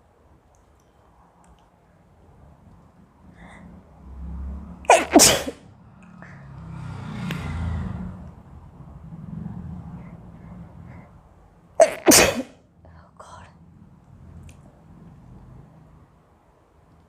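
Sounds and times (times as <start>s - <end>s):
soft breathing: 3.2s - 4.4s, 6.1s - 7.3s, 9.3s - 11.6s
woman sneezing: 11.8s - 12.5s.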